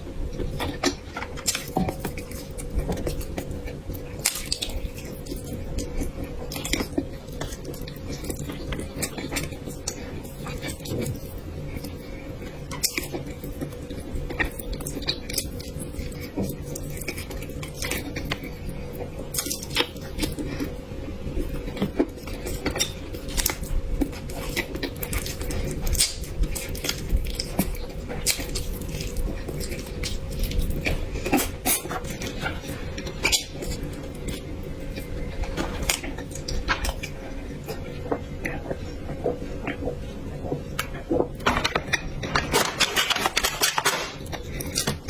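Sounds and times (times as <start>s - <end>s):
chewing: 0.3s - 45.0s.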